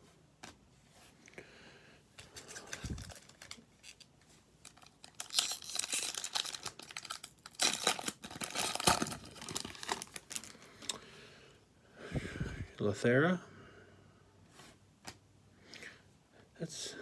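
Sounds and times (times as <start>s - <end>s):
cards being handled: 2.2s - 4.1s
plastic wrapper crinkling and tearing: 2.2s - 10.9s.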